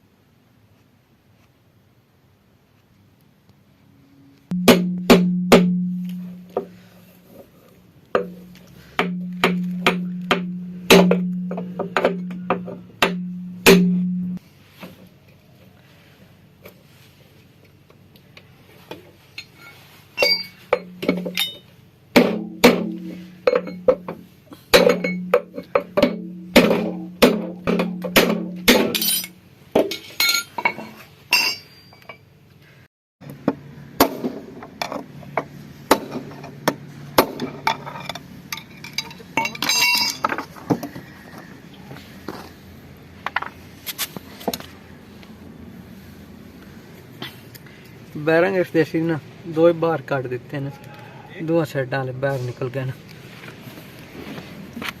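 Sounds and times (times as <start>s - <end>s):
hammer blows on metal: 4.5s - 6.9s, 8.2s - 14.4s.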